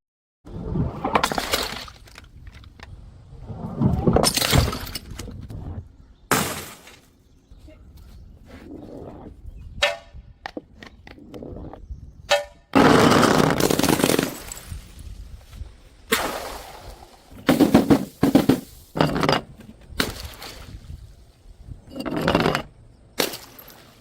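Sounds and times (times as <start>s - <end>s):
objects being smashed: 4.0s - 5.3s, 6.3s - 7.0s, 12.3s - 15.0s, 16.1s - 20.4s, 22.1s - 24.0s.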